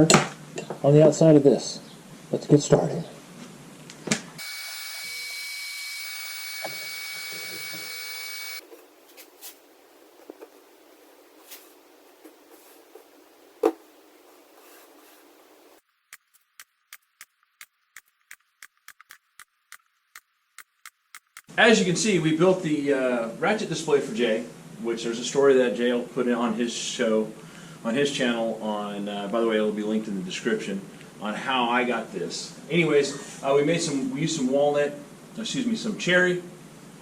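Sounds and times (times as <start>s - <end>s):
finish sprayer hissing and whining: 4.4s - 8.6s
quick regular ticking: 16.1s - 21.5s.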